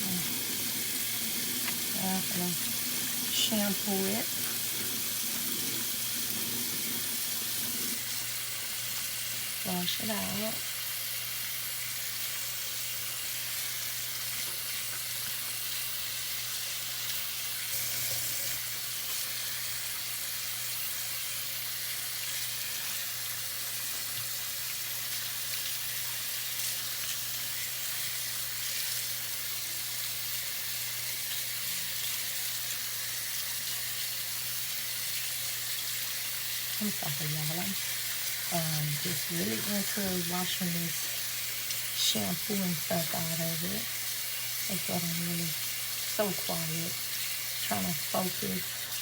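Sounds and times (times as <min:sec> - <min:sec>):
tap water splashing through hair: 0:00.3 - 0:02.0.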